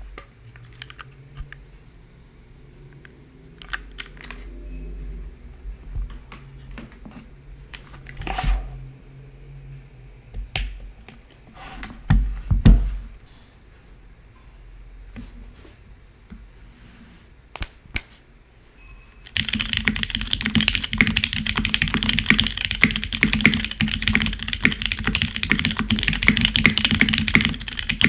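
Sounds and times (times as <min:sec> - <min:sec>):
mechanical keyboard keystroke clicks: 0:19.3 - 0:28.0.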